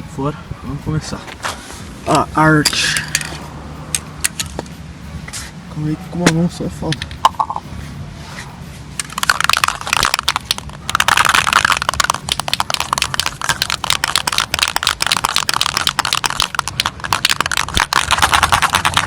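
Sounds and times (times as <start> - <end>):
rapid crackling clicks: 9.0 - 19.0.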